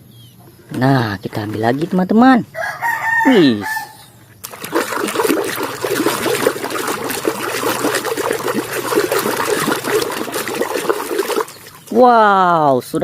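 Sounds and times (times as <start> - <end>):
water running and splashing: 4.4 - 12.4.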